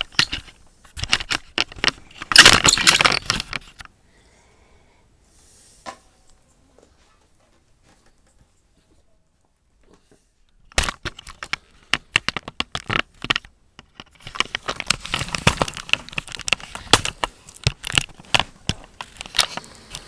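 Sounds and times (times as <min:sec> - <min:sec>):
crackling and rustling clicks: 0:00.0 - 0:03.9, 0:09.8 - 0:20.0.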